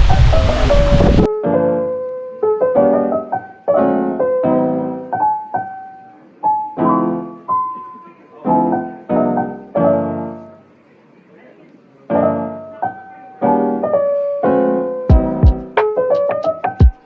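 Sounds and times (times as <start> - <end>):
wind rumbling on microphone: 0.0 - 1.3
solo piano music: 0.0 - 10.9, 12.0 - 17.0.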